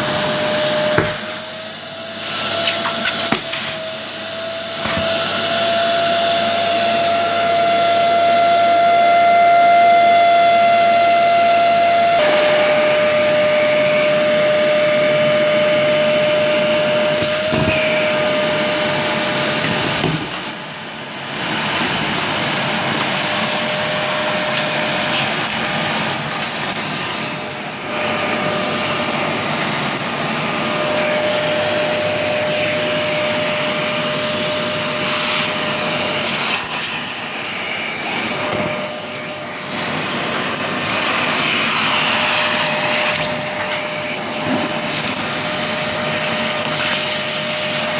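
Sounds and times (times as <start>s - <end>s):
shop vacuum whining: 0.0s - 47.9s.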